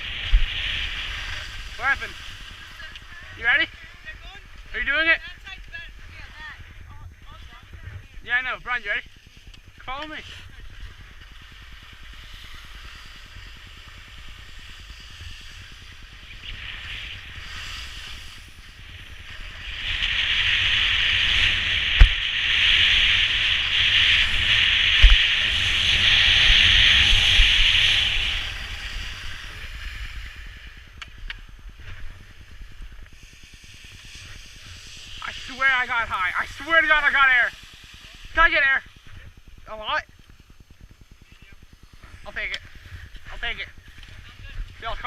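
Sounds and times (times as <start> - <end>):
skis scraping over hard snow: 0.0 - 5.4.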